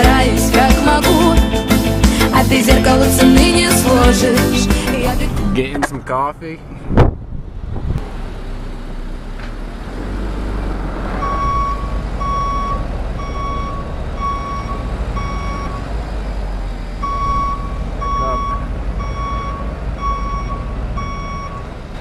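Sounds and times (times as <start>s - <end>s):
car engine rumbling: 0.0s - 22.0s
reversing alarm beeping: 11.2s - 15.9s, 17.0s - 21.8s.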